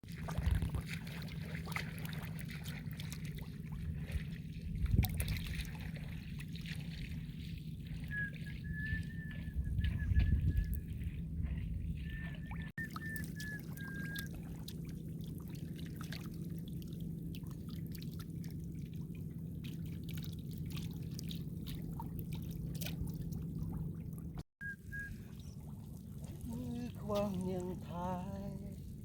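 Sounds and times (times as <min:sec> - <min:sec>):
steady low rumble: 0:00.1 - 0:29.0
water trickling and dripping: 0:12.2 - 0:24.4.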